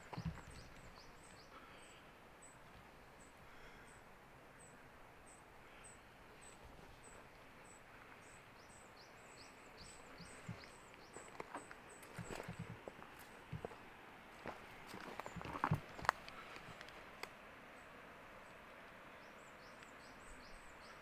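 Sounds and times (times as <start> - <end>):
small bird chirping: 4.6 - 13.6.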